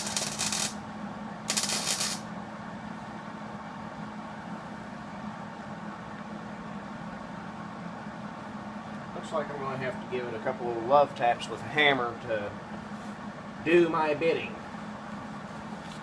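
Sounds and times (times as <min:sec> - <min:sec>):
welder crackling: 0:00.0 - 0:00.8, 0:01.5 - 0:02.2
steady low hum: 0:00.0 - 0:16.0.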